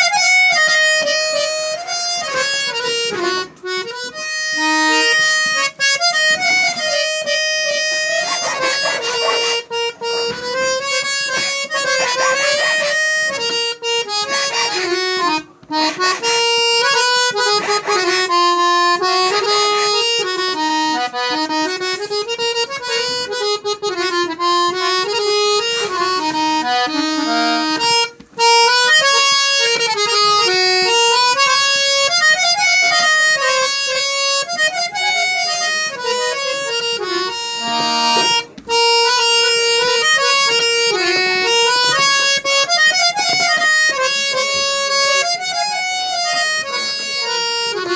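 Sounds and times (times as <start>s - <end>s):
harmonium melody: 0.0s - 47.9s.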